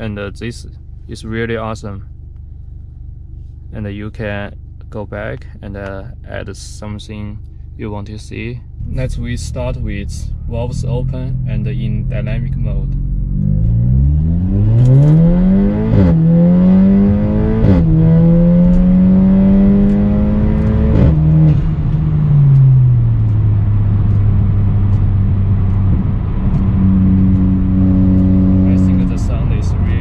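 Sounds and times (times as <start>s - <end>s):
car engine accelerating with upshifts: 7.4s - 30.0s.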